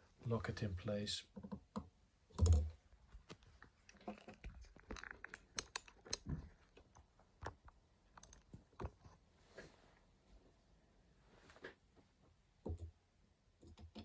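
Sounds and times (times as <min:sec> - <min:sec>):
metal parts clicking and tapping: 0:01.4 - 0:02.8.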